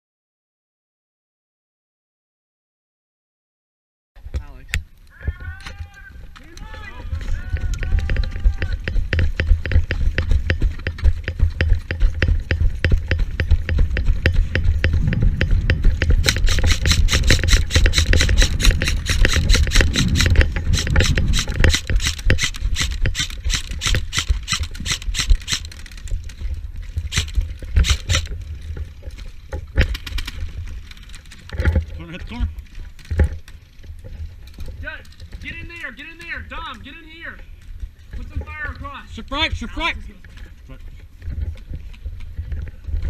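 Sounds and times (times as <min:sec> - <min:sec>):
rattling gear: 0:05.1 - 0:38.8
quick footsteps: 0:05.1 - 0:43.0
heavy low rumble: 0:05.4 - 0:29.0.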